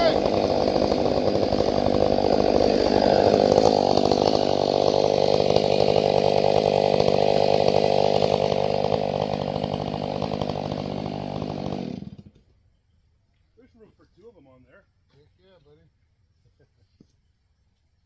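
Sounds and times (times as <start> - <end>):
chainsaw running at high speed: 0.0 - 12.4.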